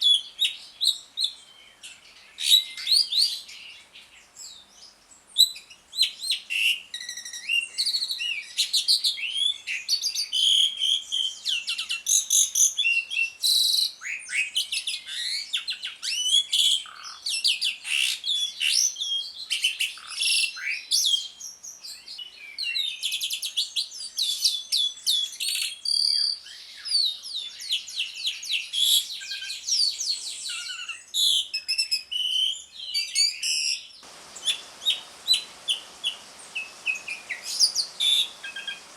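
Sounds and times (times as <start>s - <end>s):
starling chattering: 34.1s - 38.9s.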